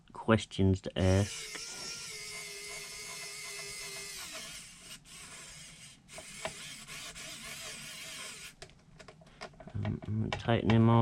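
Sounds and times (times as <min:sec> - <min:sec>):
electric screwdriver whining: 0:01.1 - 0:08.7.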